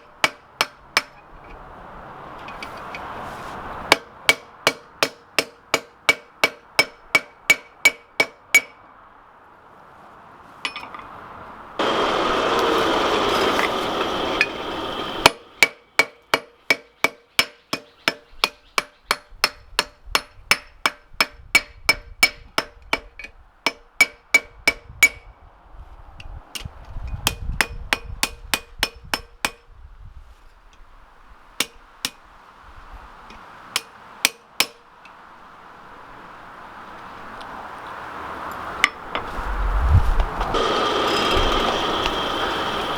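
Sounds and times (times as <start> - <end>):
loud rushing noise: 11.8 - 15.6, 39.3 - 42.9.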